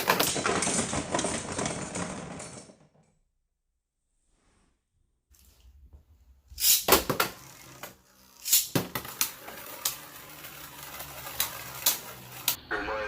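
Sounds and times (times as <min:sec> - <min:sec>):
spinning tops clashing: 0:06.6 - 0:12.6.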